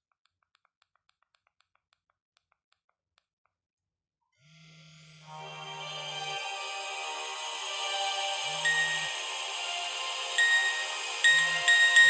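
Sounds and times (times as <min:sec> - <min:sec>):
phone ringtone: 0:08.6 - 0:09.1, 0:10.4 - 0:12.0.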